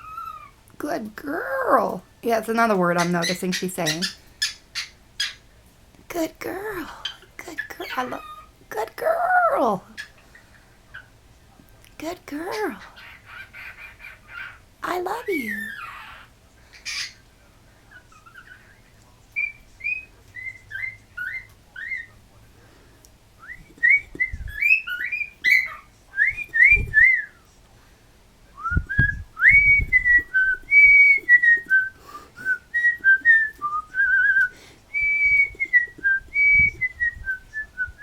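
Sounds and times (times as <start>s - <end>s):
cockatiel whistling: 23.4s - 27.4s
dull low thuds: 28.6s - 30.1s.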